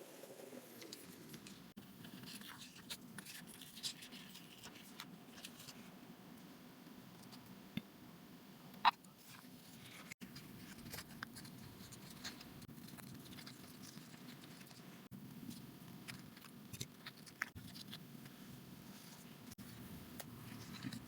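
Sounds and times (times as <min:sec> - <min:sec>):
paper and tools clicking and tapping: 0:09.2 - 0:18.4.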